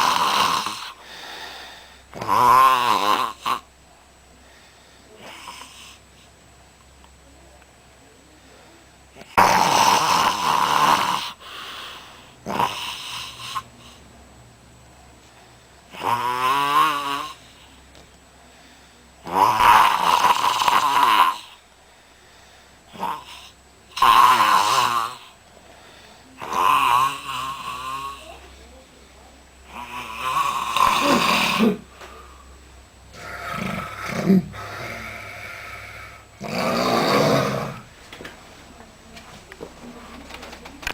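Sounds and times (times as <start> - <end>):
person snoring loudly: 0.0 - 1.0, 2.2 - 3.6, 9.4 - 11.4, 12.4 - 13.7, 15.9 - 17.5, 19.2 - 21.6, 22.9 - 25.3, 26.4 - 28.4, 29.7 - 31.9, 33.1 - 37.9
quiet breathing: 0.0 - 2.3, 3.6 - 6.5, 7.2 - 9.4, 11.1 - 14.3, 17.2 - 19.3, 21.3 - 24.0, 24.8 - 26.5, 27.3 - 40.7.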